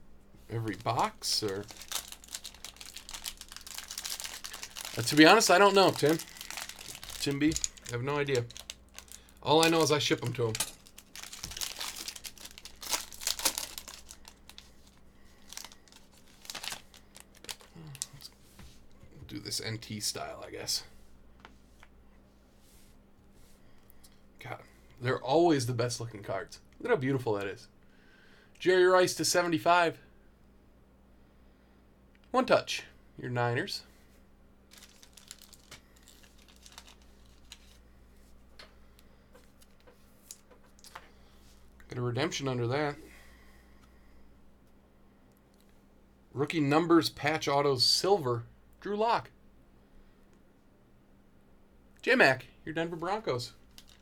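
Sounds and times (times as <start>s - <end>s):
low steady hum: 0.0s - 54.0s
trading cards clicking and rustling: 0.6s - 18.2s, 34.7s - 37.8s
plastic wrapping crinkling and tearing: 0.6s - 18.4s, 34.7s - 37.8s, 53.6s - 54.0s.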